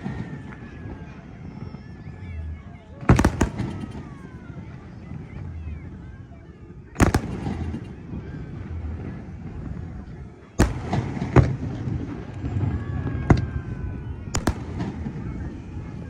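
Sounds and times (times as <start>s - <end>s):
distant fireworks bangs: 0.0s - 6.3s, 6.9s - 16.0s
fireworks crackle: 3.1s - 4.4s, 7.0s - 9.8s.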